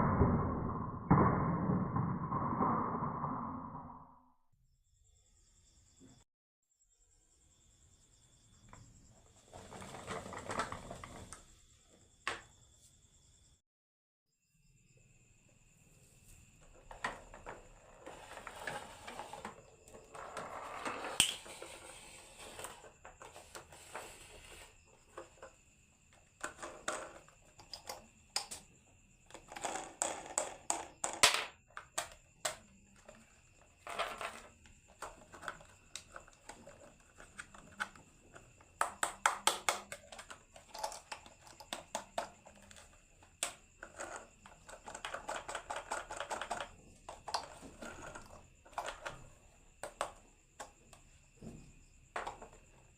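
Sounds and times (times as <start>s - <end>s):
marbles clicking and knocking: 0.0s - 4.0s
marbles rattling down wooden track: 29.3s - 31.6s.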